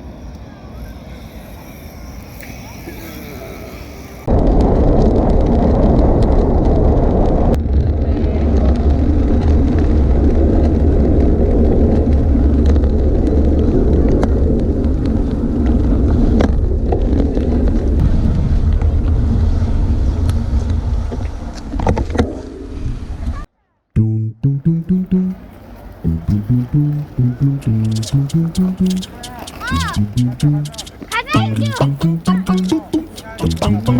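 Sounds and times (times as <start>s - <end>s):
wind and road rumble: 4.3s - 21.8s
faint clicks: 27.6s - 33.9s.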